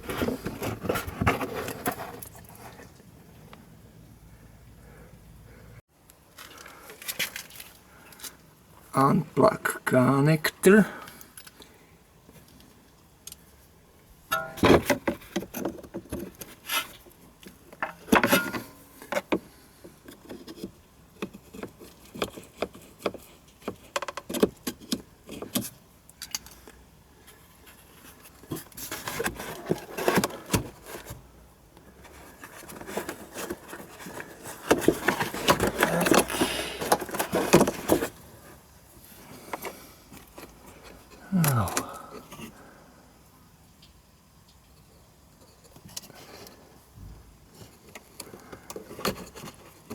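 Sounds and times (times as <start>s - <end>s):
plastic parts and tools rattling: 32.0s - 38.2s.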